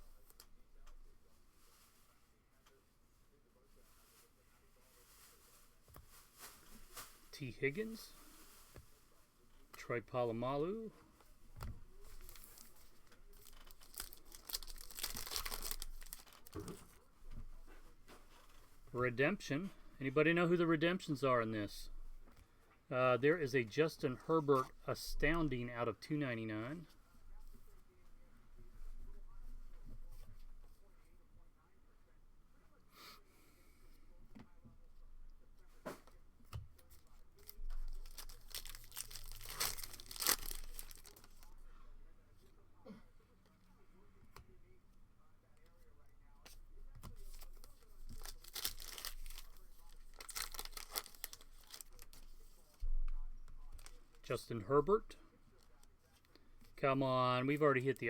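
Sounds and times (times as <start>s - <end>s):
card wrappers crinkling: 11.9s - 17.0s, 36.9s - 41.6s, 47.1s - 52.4s, 53.7s - 54.3s.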